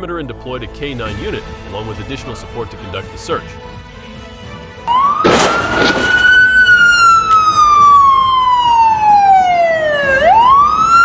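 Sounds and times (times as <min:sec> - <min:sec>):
police siren wailing: 0:04.9 - 0:11.0.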